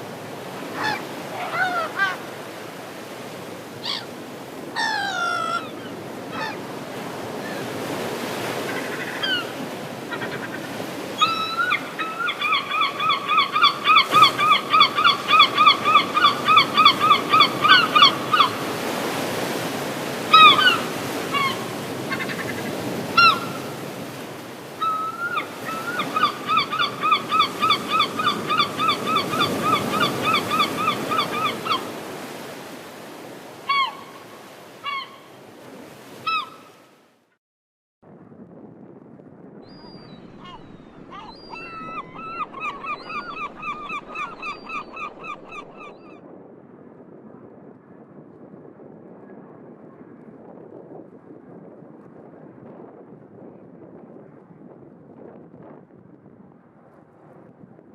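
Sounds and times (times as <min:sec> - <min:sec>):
waves washing: 0:00.0 - 0:36.7, 0:40.2 - 0:45.8
gulls calling: 0:00.5 - 0:32.7, 0:33.4 - 0:35.4, 0:36.2 - 0:36.8, 0:39.7 - 0:46.1.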